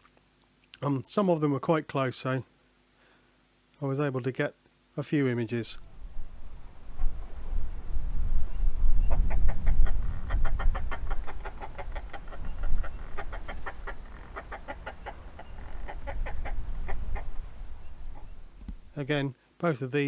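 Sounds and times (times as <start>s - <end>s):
low wind rumble on microphone: 5.7s - 19.2s
seabirds cackling: 8.9s - 19.0s.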